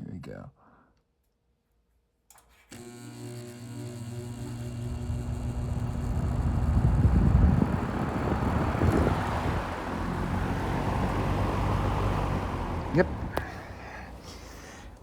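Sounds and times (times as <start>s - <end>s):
fan motor humming: 2.7s - 15.0s
rush of air from fan: 5.1s - 15.0s.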